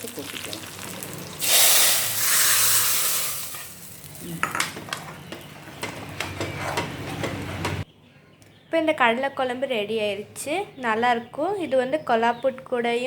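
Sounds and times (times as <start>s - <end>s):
hot oil sizzling: 0.0s - 4.5s
ladle scraping pot: 5.8s - 7.8s.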